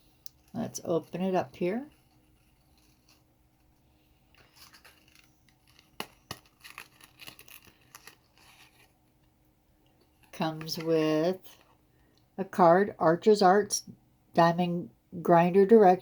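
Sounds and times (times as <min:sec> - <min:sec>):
mesh bag rustling: 0:00.3 - 0:09.0.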